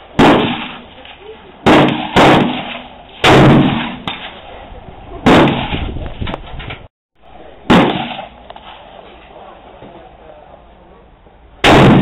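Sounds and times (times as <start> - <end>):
loud gunshots with echo: 0.1 - 0.9, 1.6 - 4.4, 5.2 - 5.9, 7.6 - 8.8, 11.6 - 12.0
faint cracks from other guns: 7.8 - 10.1.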